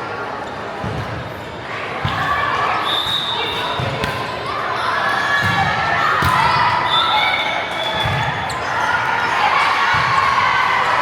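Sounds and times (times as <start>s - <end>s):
sneakers squeaking on floor: 6.3s - 9.3s.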